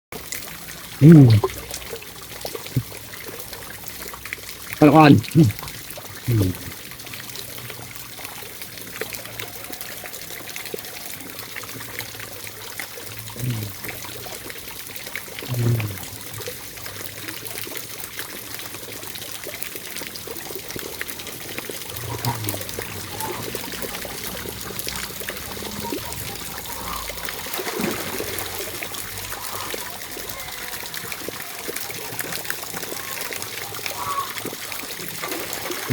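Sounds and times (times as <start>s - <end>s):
steady rain falling: 0.4s - 35.9s
short low sounds: 15.5s - 16.5s, 21.9s - 27.2s.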